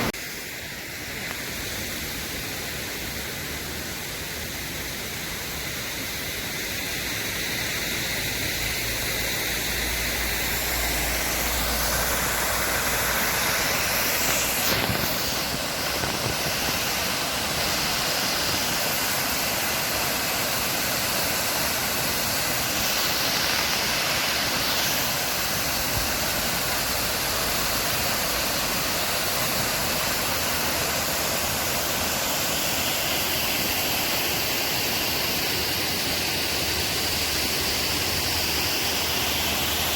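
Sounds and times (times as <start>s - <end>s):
rush of falling water: 0.0s - 39.9s.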